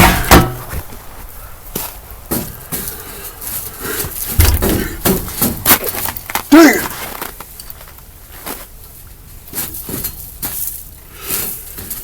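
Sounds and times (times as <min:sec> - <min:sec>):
kicking knocks and thump: 0:00.0 - 0:01.0, 0:04.1 - 0:05.8.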